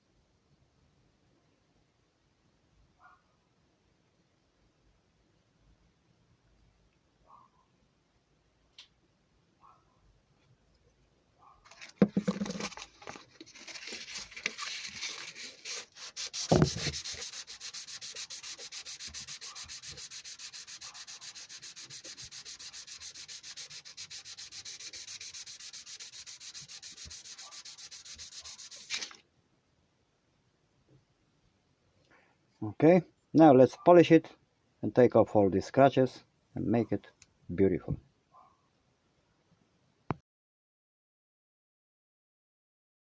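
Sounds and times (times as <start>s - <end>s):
sandpaper rubbing on steel: 13.6s - 29.2s.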